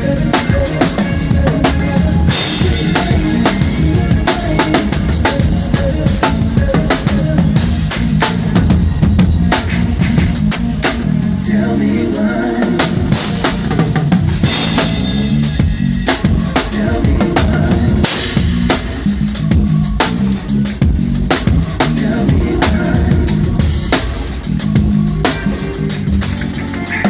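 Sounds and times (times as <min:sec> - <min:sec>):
drum kit played fast: 0:00.0 - 0:27.0
low bass notes: 0:00.0 - 0:27.0.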